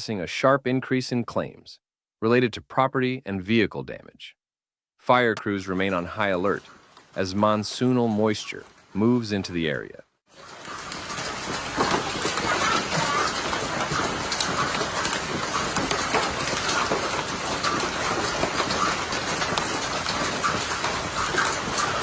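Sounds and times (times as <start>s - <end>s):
hail clattering: 5.9s - 9.0s, 10.4s - 22.0s
rain hissing: 5.9s - 9.7s, 10.4s - 22.0s.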